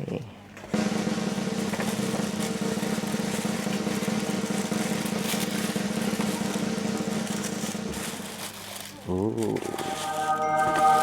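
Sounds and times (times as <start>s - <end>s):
drum roll: 0.8s - 7.9s.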